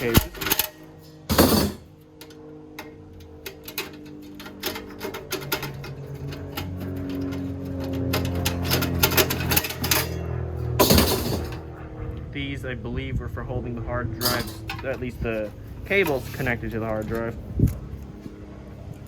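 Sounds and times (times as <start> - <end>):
cables and plastic parts rattling: 0.0 - 10.2, 14.2 - 17.8.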